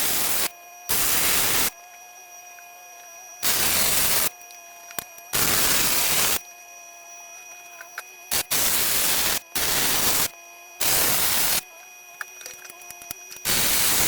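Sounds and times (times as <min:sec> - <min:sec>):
welding arc hiss and crackle: 0:00.0 - 0:01.8, 0:03.4 - 0:06.4, 0:07.8 - 0:14.0.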